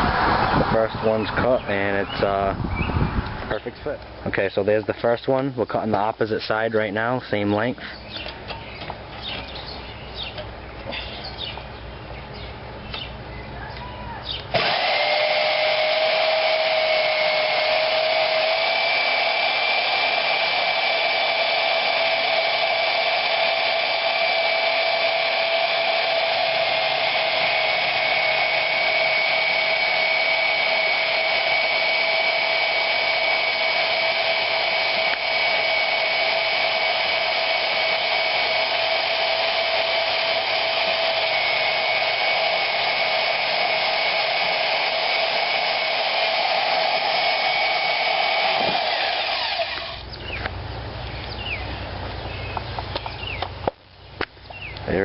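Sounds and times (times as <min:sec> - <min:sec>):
bandsaw whining cutting steel: 0:14.5 - 0:50.1.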